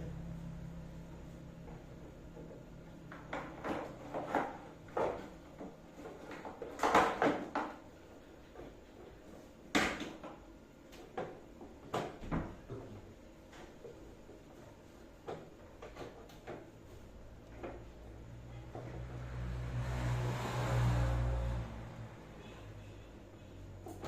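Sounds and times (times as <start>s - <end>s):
hard objects knocking and clattering: 1.7s - 10.4s.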